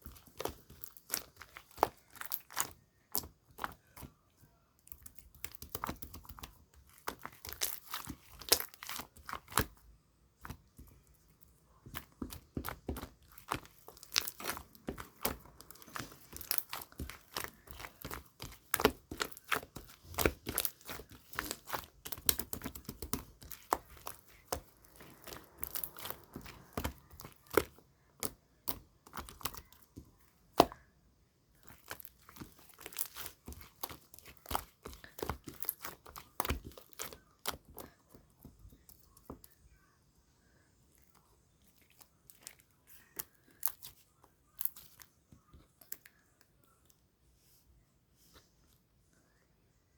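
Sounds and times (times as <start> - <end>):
slime squishing with sticky pops: 0.0 - 4.2, 4.8 - 30.9, 31.6 - 39.6, 41.0 - 46.2.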